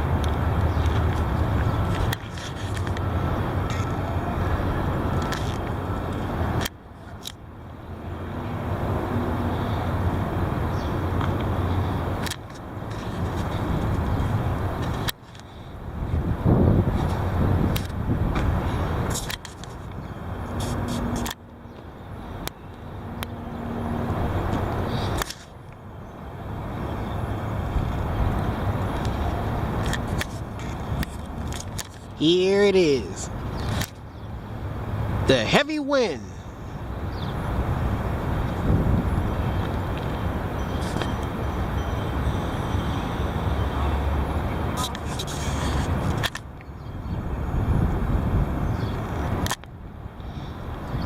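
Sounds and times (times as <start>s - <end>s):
strong wind buffeting microphone: 9.8s - 21.3s, 36.7s - 41.8s, 44.4s - 51.0s.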